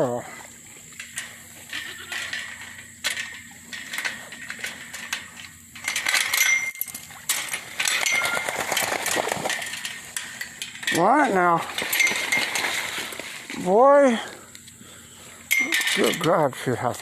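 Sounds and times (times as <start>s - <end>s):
metallic clinks and rattles: 0.8s - 14.2s, 15.5s - 16.5s
short squeaks: 1.7s - 2.5s.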